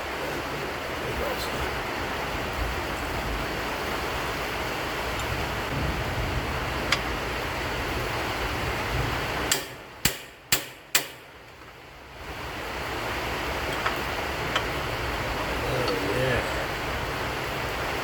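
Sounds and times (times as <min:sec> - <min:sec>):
sharp knocks: 0:09.5 - 0:11.2.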